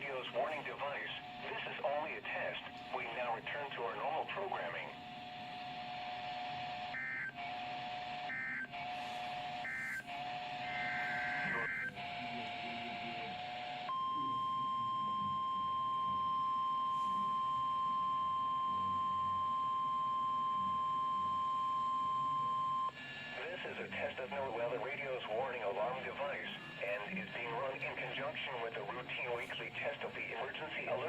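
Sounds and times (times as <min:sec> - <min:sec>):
steady warning alarm tone: 0:05.2 - 0:24.0.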